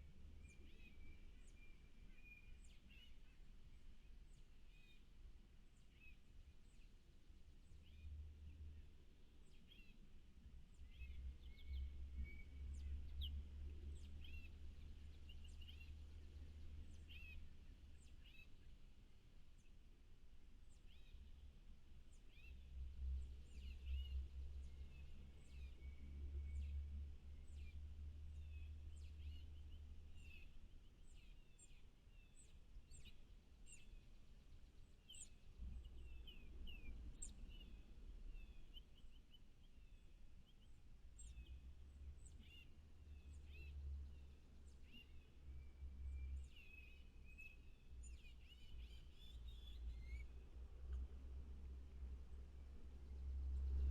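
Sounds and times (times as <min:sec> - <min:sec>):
small birds chirping: 0:10.7 - 0:18.8, 0:22.1 - 0:51.2.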